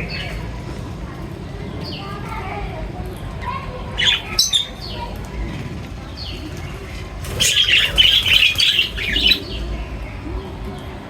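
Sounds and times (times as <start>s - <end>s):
small birds chirping: 0.0s - 11.0s.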